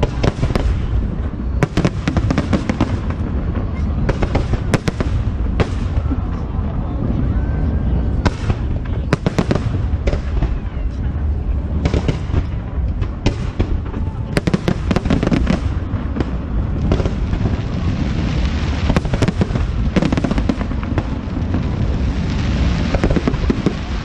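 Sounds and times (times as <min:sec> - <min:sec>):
fireworks bangs and crackles: 0:00.0 - 0:24.0
low booming: 0:00.0 - 0:24.0.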